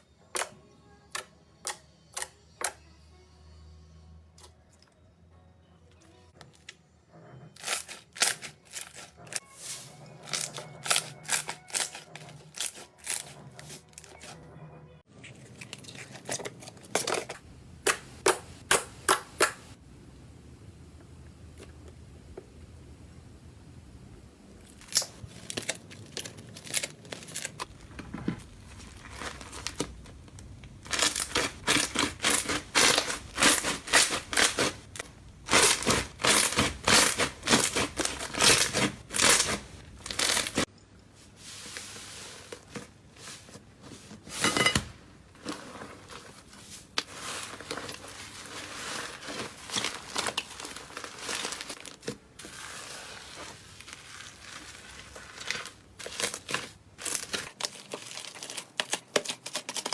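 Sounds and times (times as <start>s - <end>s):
slime crackling and popping: 28.5s - 40.6s.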